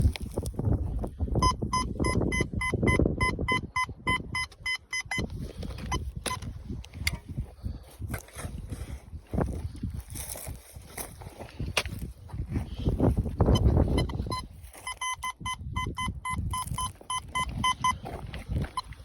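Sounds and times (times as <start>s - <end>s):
metal detector beeping: 1.3s - 7.3s, 12.7s - 19.0s.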